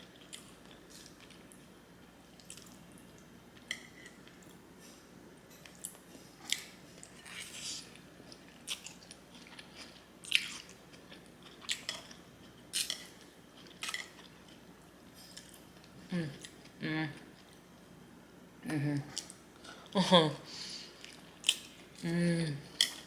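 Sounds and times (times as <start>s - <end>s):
person chewing food: 2.3s - 17.6s, 20.8s - 22.1s.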